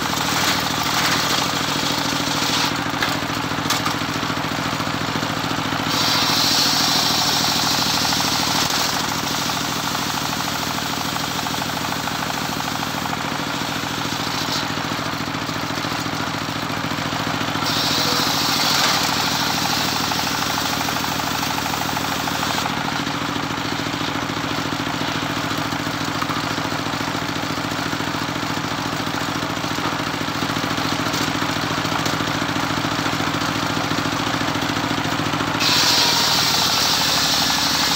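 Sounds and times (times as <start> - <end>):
circular saw cutting wood: 0.0 - 4.0, 5.4 - 16.1, 17.4 - 24.0, 35.4 - 37.9.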